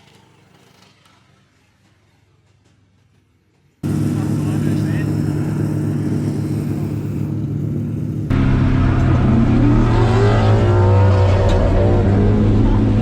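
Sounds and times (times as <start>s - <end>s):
car engine revving: 3.8s - 13.0s
car engine running: 3.8s - 13.0s.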